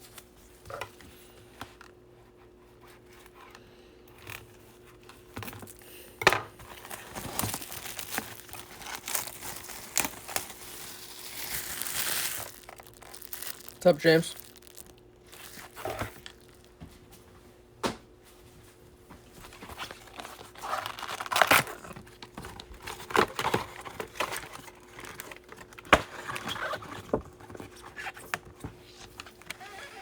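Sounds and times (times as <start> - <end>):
plastic wrapping crinkling and tearing: 6.6 - 16.8, 19.4 - 28.2.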